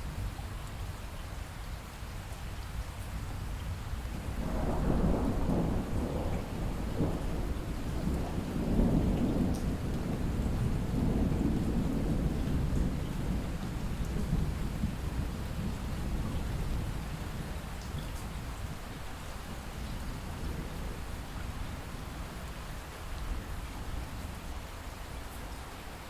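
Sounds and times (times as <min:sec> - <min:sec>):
steady rain: 0:00.0 - 0:26.0
thunder rumbling: 0:04.2 - 0:17.8.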